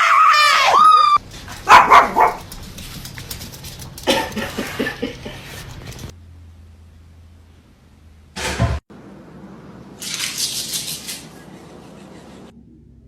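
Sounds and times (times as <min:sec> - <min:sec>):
dog howling: 0:00.0 - 0:01.2
dog yipping: 0:00.0 - 0:02.5
dog barking: 0:01.6 - 0:02.5.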